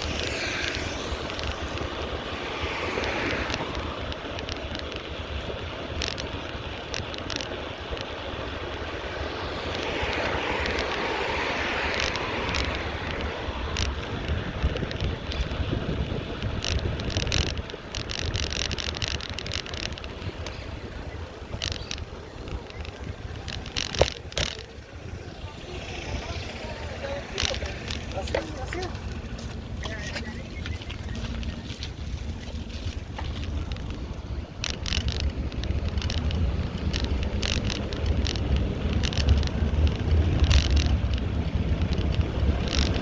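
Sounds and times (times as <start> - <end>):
rushing noise: 0.0 - 4.6
sharp clicks and rattles: 0.0 - 43.0
wind and road noise on microphone: 0.0 - 43.0.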